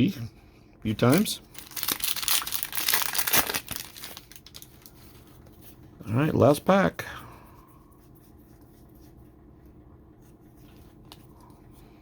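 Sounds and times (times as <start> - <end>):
trading cards rustling: 0.9 - 5.6.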